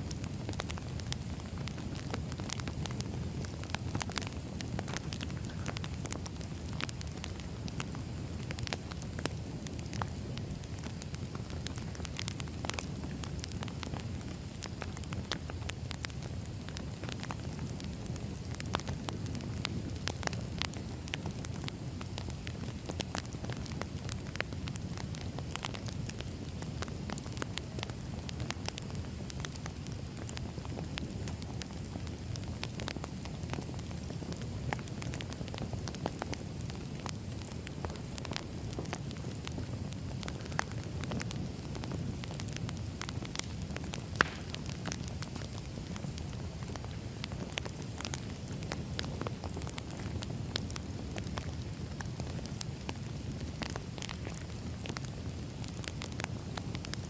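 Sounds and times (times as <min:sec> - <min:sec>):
low roar of flames: 0:00.0 - 0:57.0
logs popping and snapping: 0:43.3 - 0:45.7.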